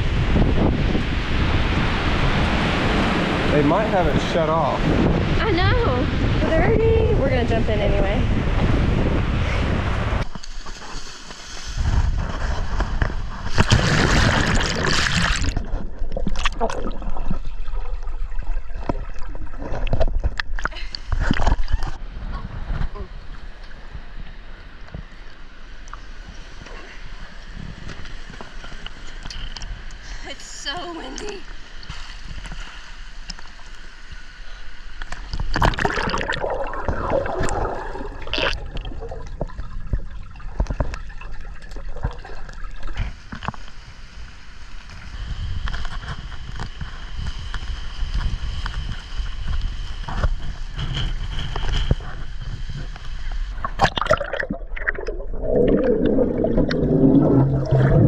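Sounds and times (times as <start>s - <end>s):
wind buffeting microphone: 0.0s - 10.4s, 11.7s - 16.2s
water splashing in a pool: 10.2s - 22.3s, 30.9s - 58.0s.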